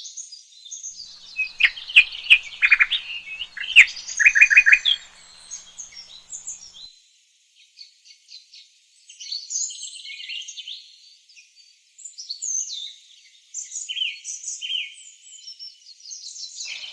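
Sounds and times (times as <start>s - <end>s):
songbirds chirping and singing: 1.2s - 6.8s.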